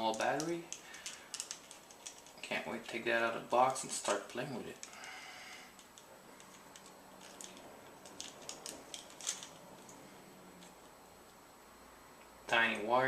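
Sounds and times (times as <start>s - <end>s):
packaging rustling: 0.0s - 2.4s, 3.5s - 10.0s.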